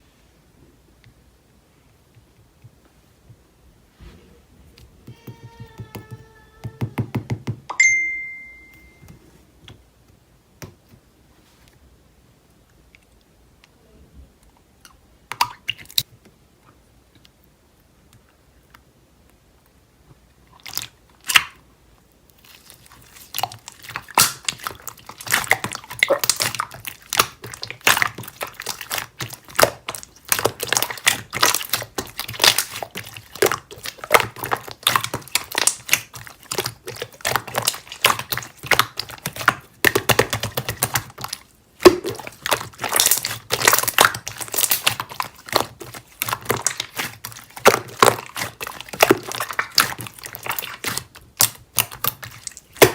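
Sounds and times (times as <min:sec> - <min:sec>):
slime squished by hand: 0:22.3 - 0:52.9.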